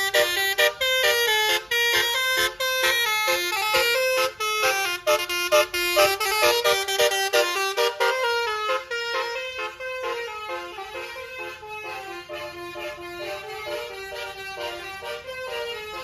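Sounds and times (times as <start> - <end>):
bus multi-tone horn tune: 0.0 - 16.0.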